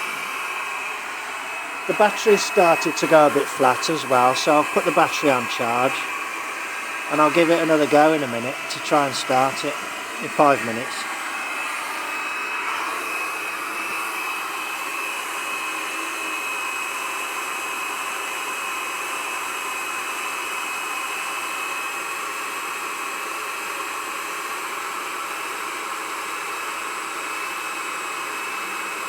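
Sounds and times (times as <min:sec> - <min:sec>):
hot air gun blowing: 0:00.0 - 0:13.8.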